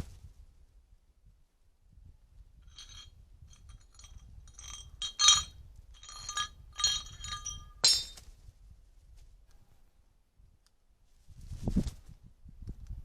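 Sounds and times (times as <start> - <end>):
ringing clinks of hard object: 2.7 - 8.2.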